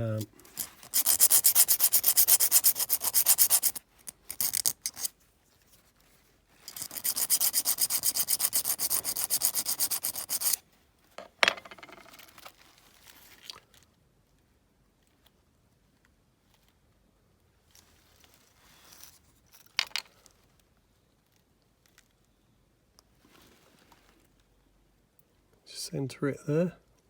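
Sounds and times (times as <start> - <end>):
sanding metal washer: 0.1 - 3.8, 6.7 - 10.6.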